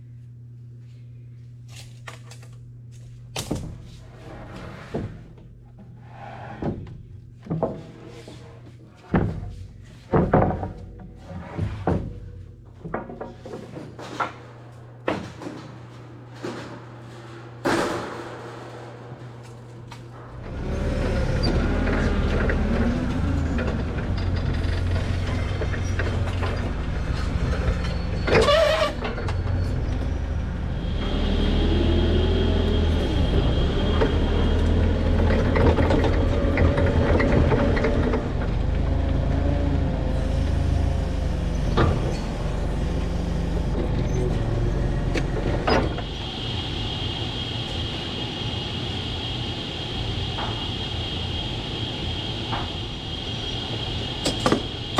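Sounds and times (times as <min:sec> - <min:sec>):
heavy vehicle engine running: 0:17.8 - 0:54.9
squeals: 0:20.6 - 0:38.4, 0:39.4 - 0:54.9.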